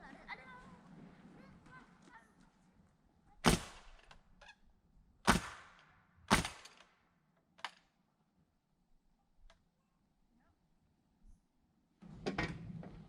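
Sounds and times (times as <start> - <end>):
nails driven into lumber: 3.4 - 4.3, 5.3 - 7.0, 7.6 - 7.9.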